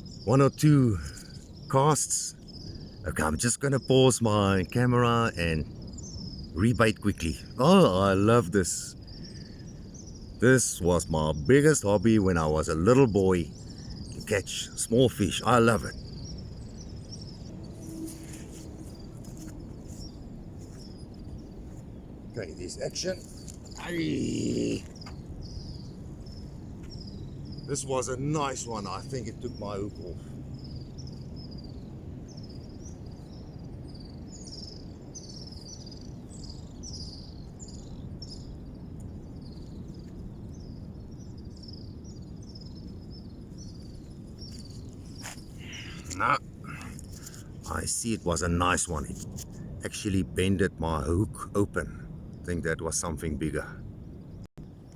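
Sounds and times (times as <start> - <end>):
steady low rumble: 10.1 - 54.9
high chirping calls: 22.2 - 38.7, 40.5 - 49.2.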